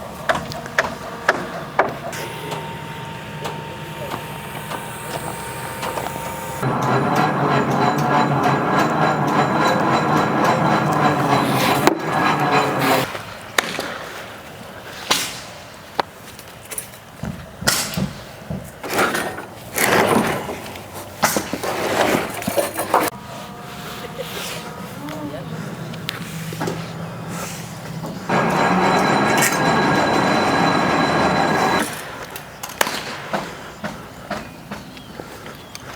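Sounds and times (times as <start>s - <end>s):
loud steady drone: 2.2s - 13.1s, 28.2s - 31.8s.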